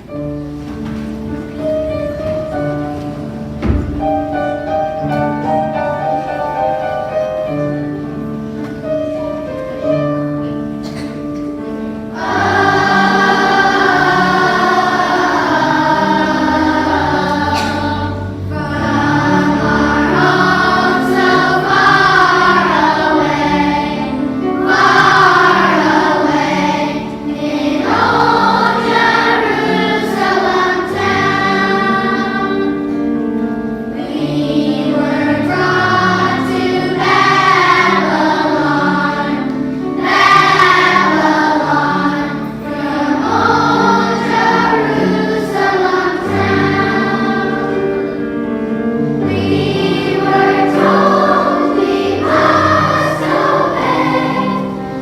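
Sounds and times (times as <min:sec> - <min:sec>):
children's choir singing: 0:00.0 - 0:55.0
instrumental accompaniment: 0:00.0 - 0:55.0.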